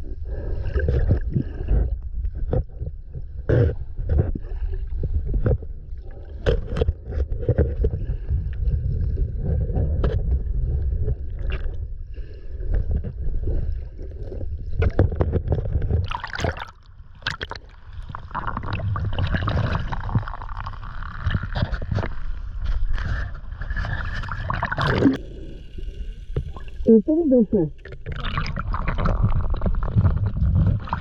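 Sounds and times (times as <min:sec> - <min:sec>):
low underwater rumble: 0:00.0 - 0:31.0
gurgling rush of bubbles: 0:12.9 - 0:26.9, 0:27.7 - 0:31.0.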